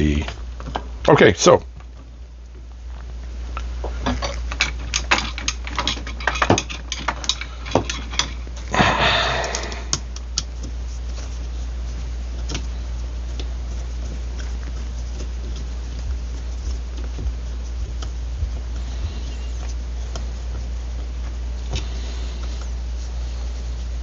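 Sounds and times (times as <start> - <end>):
steady low hum: 0.0 - 24.0
scraping rustle: 9.7 - 24.0.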